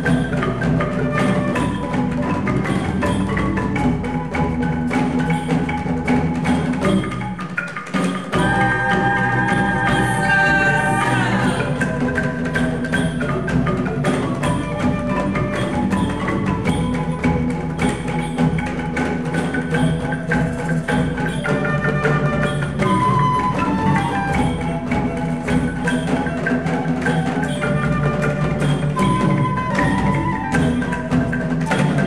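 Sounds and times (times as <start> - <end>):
live music with percussion beat: 0.0 - 32.0.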